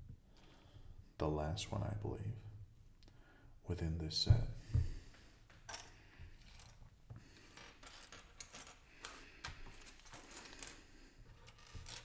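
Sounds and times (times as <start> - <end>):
plastic bricks clicking and rattling: 7.4 - 12.0.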